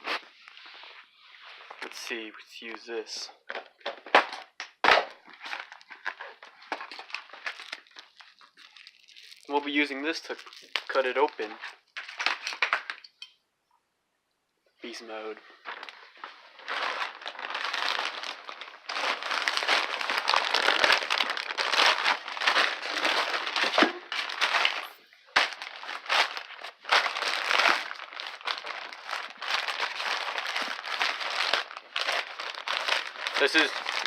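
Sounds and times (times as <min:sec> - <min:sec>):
packaging crinkling: 0:04.9 - 0:13.0, 0:15.6 - 0:34.0.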